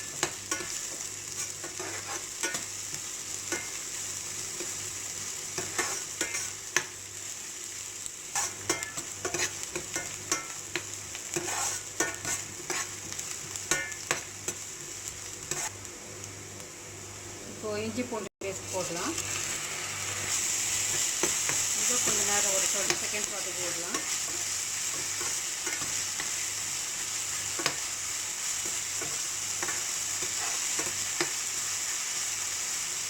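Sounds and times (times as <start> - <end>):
spoon scraping a pan: 0.0 - 2.7, 5.6 - 6.9, 8.3 - 10.6, 11.3 - 14.6, 15.4 - 15.8, 20.8 - 26.4, 28.6 - 31.4
onion sizzling in a frying pan: 0.0 - 33.0.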